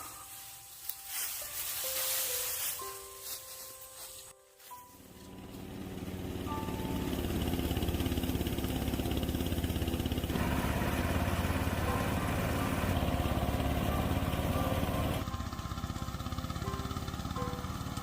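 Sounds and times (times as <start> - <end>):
small engine running: 4.9 - 18.0.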